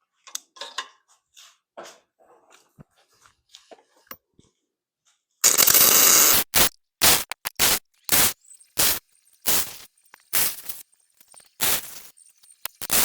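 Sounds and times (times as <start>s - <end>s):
arc welding crackle: 5.4s - 13.0s.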